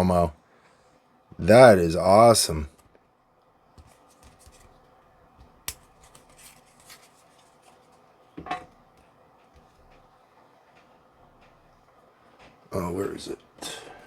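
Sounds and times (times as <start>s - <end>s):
cards clicking and rustling: 3.8s - 4.8s, 5.4s - 8.0s.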